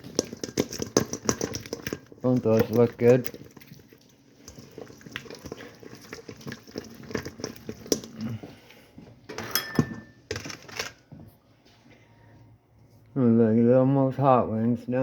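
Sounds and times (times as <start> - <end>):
utensils and dishes clattering: 0.0 - 3.7, 9.3 - 10.9.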